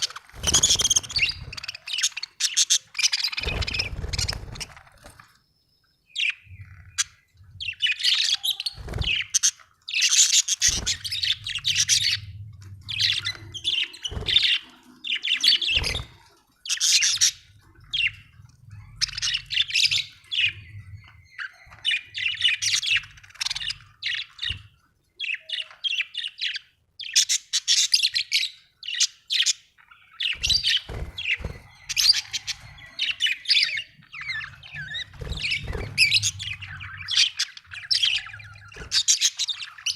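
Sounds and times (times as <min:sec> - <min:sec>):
budgerigar chirping and chattering: 0:25.2 - 0:39.9.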